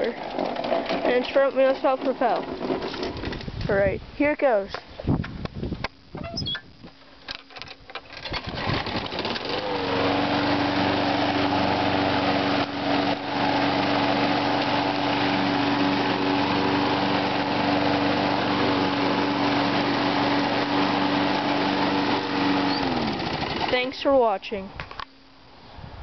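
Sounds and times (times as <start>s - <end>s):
lawn mower engine running: 0.0s - 3.6s, 6.2s - 25.2s
clicks and scraping: 0.0s - 3.7s, 4.7s - 9.6s.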